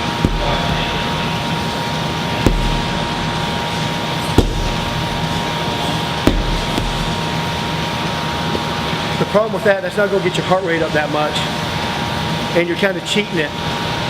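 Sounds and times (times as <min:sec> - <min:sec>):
sledgehammer thudding on tire: 0:00.0 - 0:07.5
fan hum: 0:00.0 - 0:09.8.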